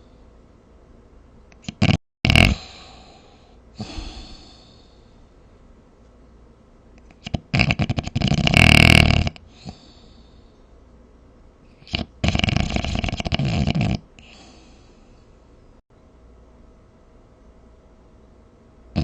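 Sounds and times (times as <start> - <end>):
person snoring: 1.6 - 5.0, 7.2 - 10.2, 11.8 - 14.8.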